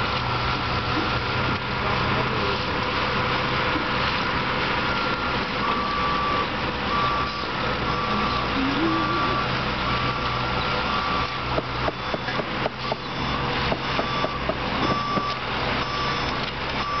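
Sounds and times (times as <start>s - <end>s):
truck engine running: 0.0s - 17.0s
reversing alarm beeping: 4.8s - 17.0s.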